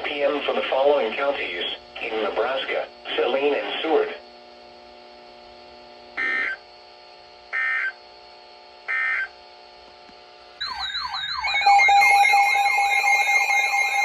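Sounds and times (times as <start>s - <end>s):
alert data bursts: 6.2s - 6.6s, 10.6s - 14.0s
faint steady drone: 10.6s - 14.0s
warbling siren-like alert tone: 10.6s - 14.0s.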